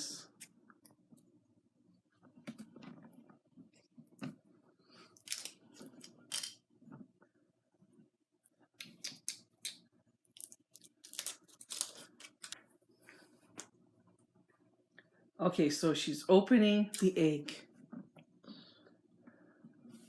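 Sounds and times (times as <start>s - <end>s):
foil wrapper crinkling: 5.2s - 6.6s, 10.4s - 12.6s.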